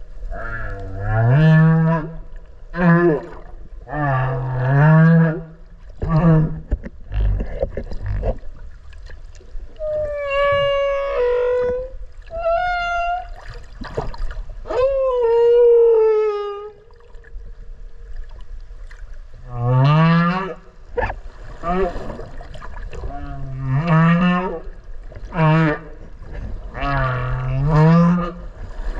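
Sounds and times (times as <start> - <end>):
whale song underwater: 9.6 - 18.6, 19.4 - 28.6.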